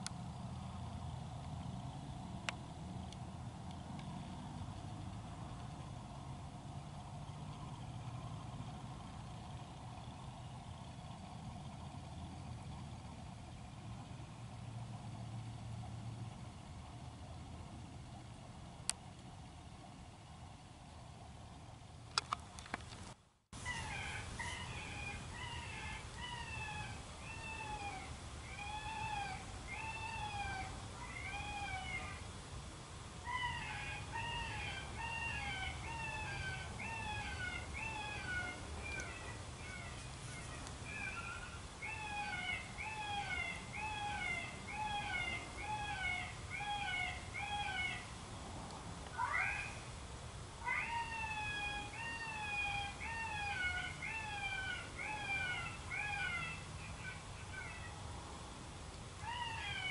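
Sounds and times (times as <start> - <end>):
electronic animal distress cries: 50.6 - 57.9.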